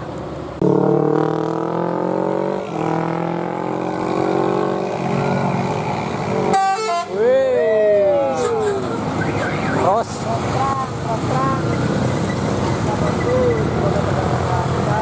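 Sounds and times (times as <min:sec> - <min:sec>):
bus horn chord blasts: 0:06.5 - 0:07.2.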